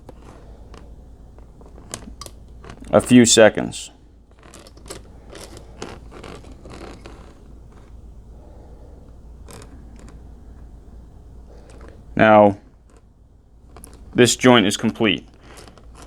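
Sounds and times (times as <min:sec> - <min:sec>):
low steady hum: 0:00.0 - 0:16.0
wires and soldering iron scraping: 0:04.3 - 0:08.1, 0:09.0 - 0:16.0.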